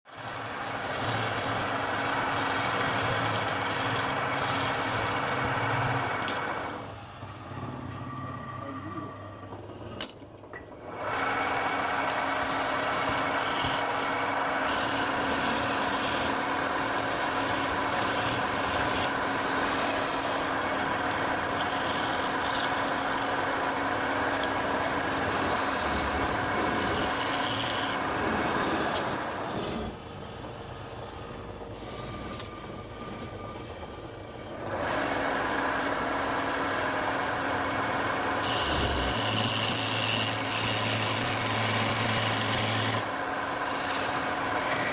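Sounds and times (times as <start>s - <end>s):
lathe motor hum: 0.1s - 10.0s, 10.8s - 44.9s
chisel scraping on wood lathe: 0.2s - 5.6s, 11.6s - 30.0s, 31.0s - 35.2s, 38.4s - 44.9s.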